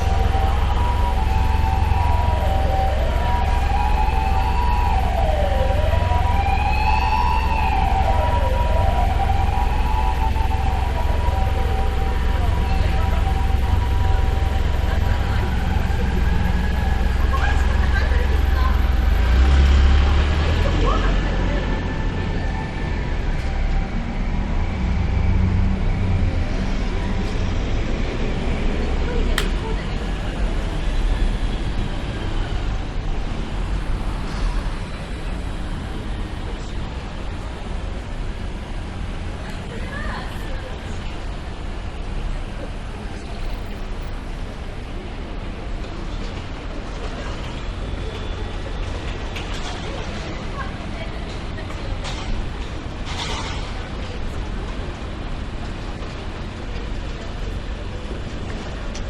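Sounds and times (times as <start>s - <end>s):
two-tone hi-lo siren: 0.0s - 19.2s
wailing siren: 0.0s - 26.4s
low rumble of city traffic: 0.0s - 59.0s.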